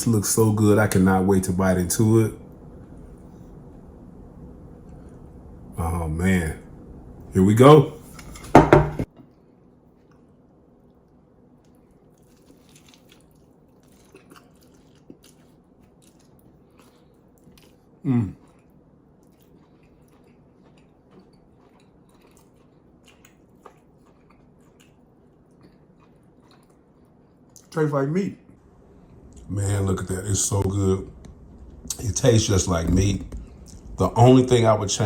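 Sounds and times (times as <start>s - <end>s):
man chewing food: 8.1s - 27.7s, 33.0s - 34.0s
soft crunches and mouth clicks: 10.0s - 27.7s, 33.0s - 34.0s
man humming: 18.1s - 18.4s.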